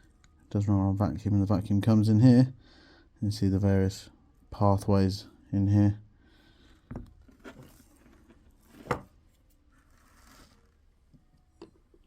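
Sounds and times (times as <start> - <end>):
faint scraping and rustling: 6.7 - 11.4.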